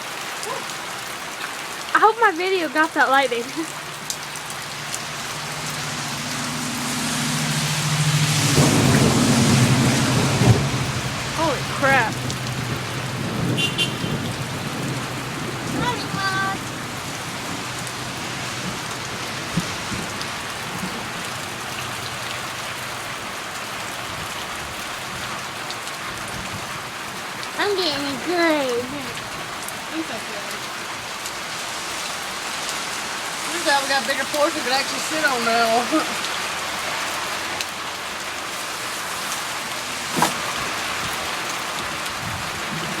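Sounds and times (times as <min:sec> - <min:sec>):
heavy rain: 0:00.0 - 0:43.0
sharp knock: 0:40.1 - 0:40.5.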